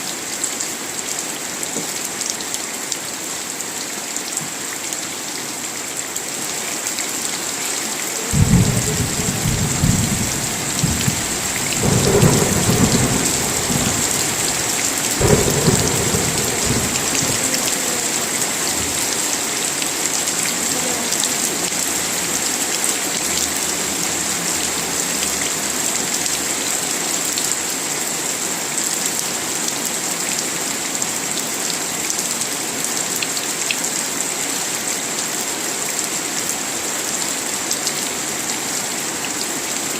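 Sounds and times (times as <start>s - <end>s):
heavy rain: 0.0s - 39.9s
rolling thunder: 8.3s - 19.1s.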